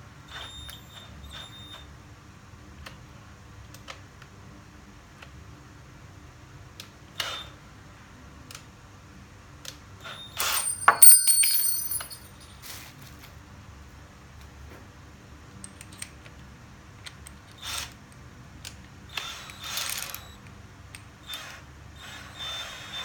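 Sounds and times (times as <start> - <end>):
metallic clinks and rattling: 10.4 - 12.5
small metal parts clicking: 10.4 - 12.5.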